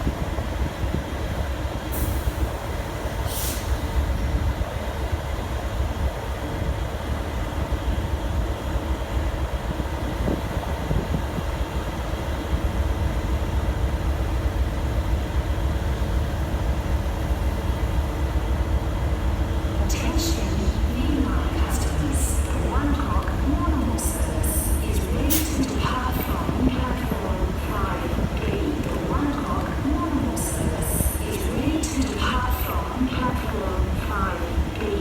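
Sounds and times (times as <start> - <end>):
locomotive engine rumbling: 0.0 - 35.0.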